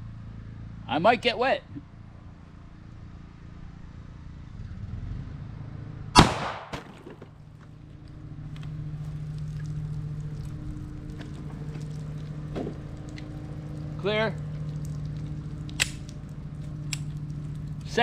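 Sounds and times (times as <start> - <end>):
steady low hum: 0.0 - 18.0
pistol shot: 6.2 - 7.1.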